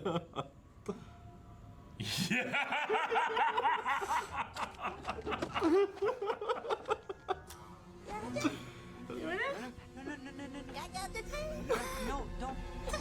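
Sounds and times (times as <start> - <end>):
people laughing: 0.0 - 0.6, 2.0 - 7.5, 9.2 - 10.8.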